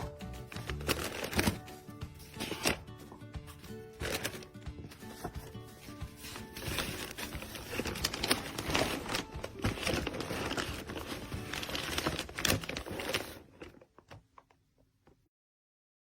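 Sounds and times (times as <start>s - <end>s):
plastic crinkling and rustling: 0.4s - 2.8s, 4.0s - 14.5s.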